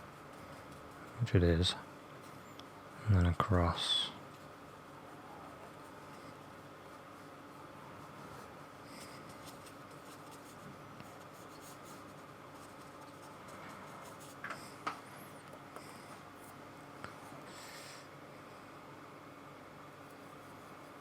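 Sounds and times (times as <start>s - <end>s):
paintbrush strokes: 0.0s - 2.4s, 3.3s - 15.4s.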